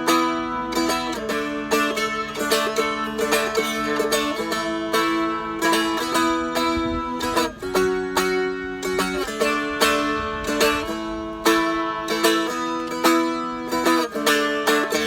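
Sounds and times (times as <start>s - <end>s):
dulcimer strummed: 0.0s - 15.0s.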